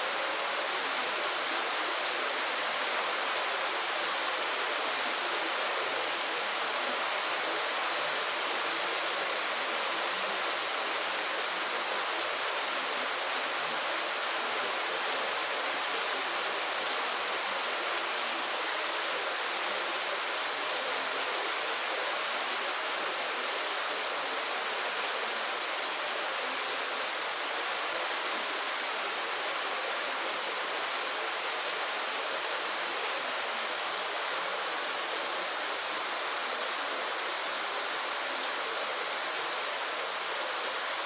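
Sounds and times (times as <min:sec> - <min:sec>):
heavy rain downpour: 0:00.0 - 0:41.0.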